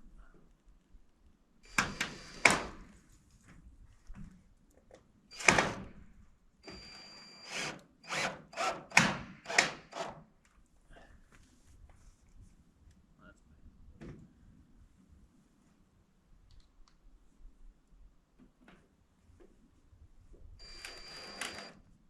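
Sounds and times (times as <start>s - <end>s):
cordless drill whining: 1.7s - 2.8s, 5.3s - 5.9s, 6.6s - 10.2s, 20.6s - 21.9s.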